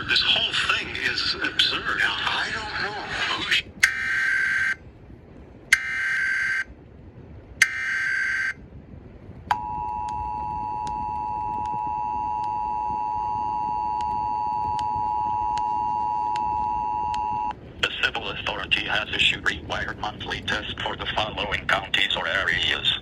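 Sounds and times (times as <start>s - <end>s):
two-tone attention signal: 9.5s - 17.5s.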